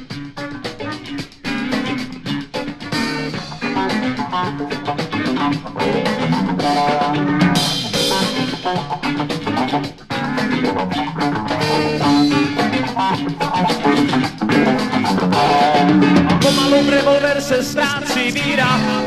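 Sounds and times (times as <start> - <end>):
instrumental band music: 0.0 - 19.0.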